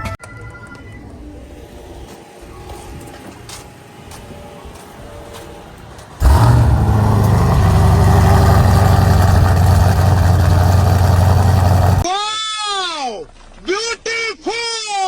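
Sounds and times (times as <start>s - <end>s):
car engine starting and idling: 6.2s - 12.0s.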